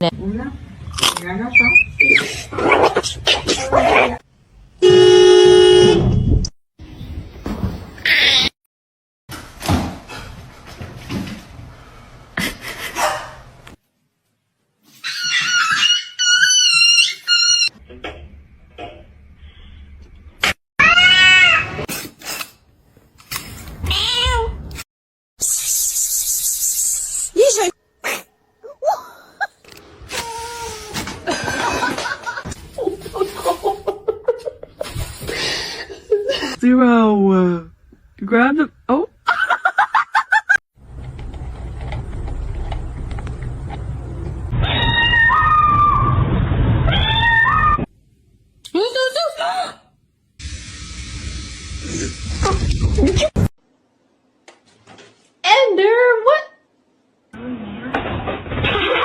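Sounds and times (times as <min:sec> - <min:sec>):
cat yowling: 0:20.8 - 0:21.8, 0:44.6 - 0:46.2, 0:46.9 - 0:47.8.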